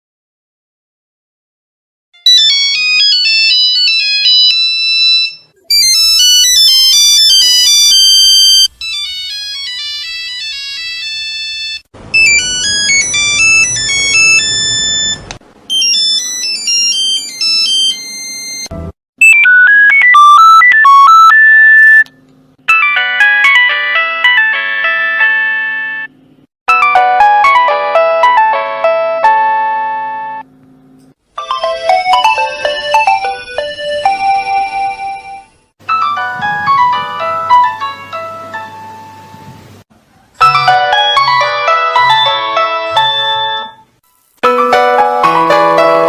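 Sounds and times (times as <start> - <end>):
mobile phone ringtones: 2.2 - 22.1, 22.7 - 26.1, 31.4 - 38.6, 40.4 - 43.8.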